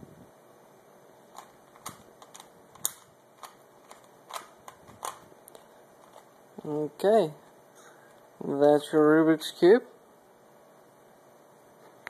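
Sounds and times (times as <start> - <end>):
puzzle cube clicking: 1.3 - 6.3.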